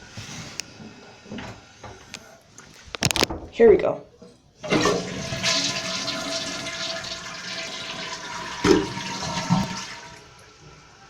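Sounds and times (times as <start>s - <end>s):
toilet flushing: 4.6s - 11.0s.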